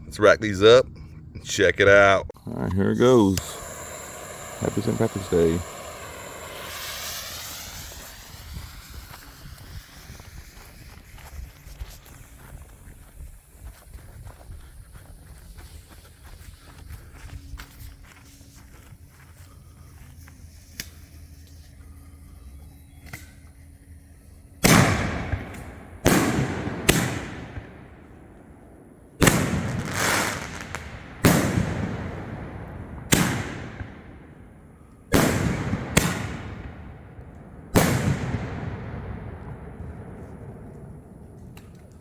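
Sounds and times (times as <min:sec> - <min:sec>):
echoing rumble: 0:02.4 - 0:10.7
firework booms: 0:03.4 - 0:11.2, 0:24.6 - 0:28.4, 0:29.2 - 0:34.5, 0:35.1 - 0:41.8.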